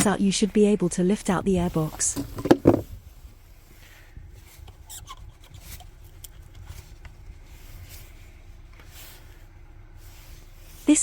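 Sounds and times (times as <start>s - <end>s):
low steady rumble: 0.0s - 11.0s
plastic part rubbing and clicks: 4.4s - 7.2s.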